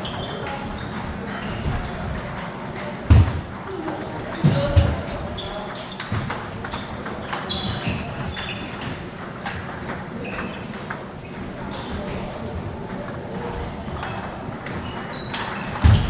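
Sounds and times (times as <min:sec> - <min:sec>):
murmur of voices: 0:00.0 - 0:16.0.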